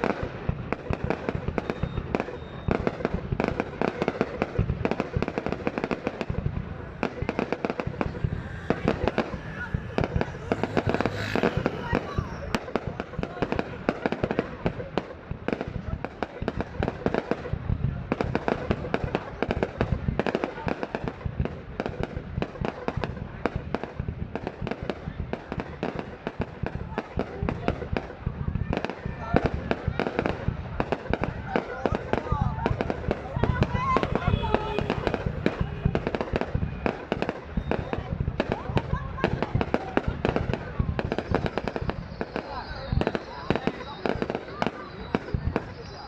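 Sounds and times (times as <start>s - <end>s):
fireworks bangs and pops: 0.0s - 46.0s.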